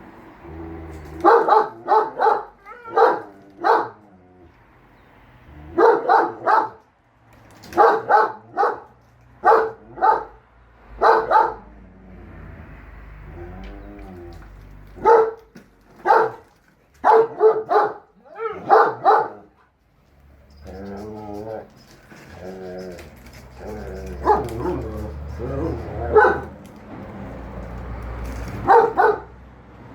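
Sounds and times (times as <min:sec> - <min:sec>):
dog barking loudly: 0:01.2 - 0:04.0, 0:05.6 - 0:06.8, 0:07.7 - 0:10.4, 0:11.0 - 0:11.8, 0:15.0 - 0:16.4, 0:17.0 - 0:19.5, 0:24.0 - 0:26.6, 0:28.5 - 0:29.4
dog whining: 0:02.6 - 0:03.4, 0:20.5 - 0:26.6.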